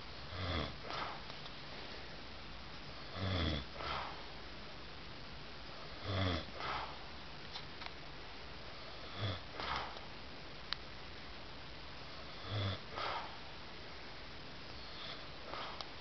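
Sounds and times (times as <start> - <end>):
faint steady hiss: 0.0 - 16.0
man snoring: 0.3 - 1.2, 3.1 - 4.1, 5.9 - 6.9, 9.0 - 10.0, 12.3 - 13.3
breathy puff: 0.8 - 1.3, 6.6 - 7.0, 9.5 - 10.0, 12.9 - 13.4, 15.0 - 15.8.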